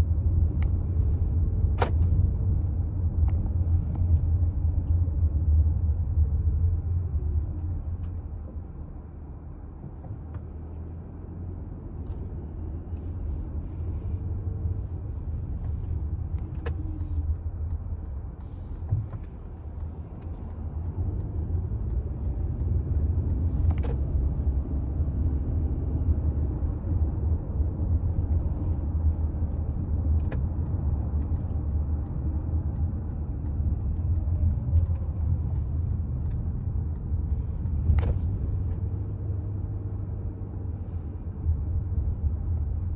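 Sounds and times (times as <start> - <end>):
car road rumble: 0.0 - 42.9.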